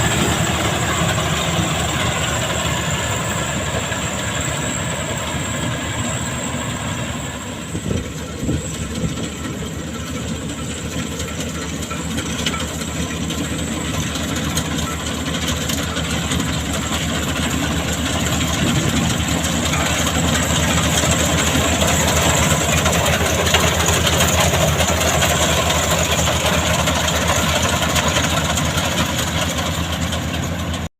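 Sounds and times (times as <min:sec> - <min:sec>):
old engine running: 0:00.0 - 0:30.9.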